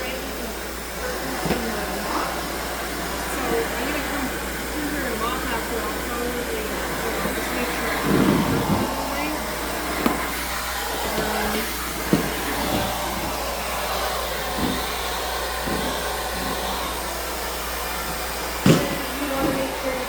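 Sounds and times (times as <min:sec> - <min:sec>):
vacuum cleaner running: 0:00.0 - 0:20.0
vacuum wand knocks: 0:10.0 - 0:10.5, 0:11.1 - 0:13.4, 0:18.6 - 0:19.6.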